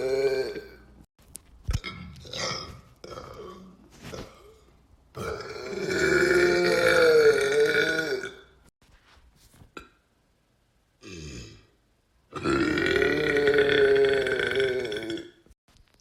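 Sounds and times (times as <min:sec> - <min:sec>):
person belching: 0:00.0 - 0:00.9, 0:01.8 - 0:04.6, 0:05.2 - 0:08.6, 0:11.0 - 0:11.7, 0:12.3 - 0:15.5.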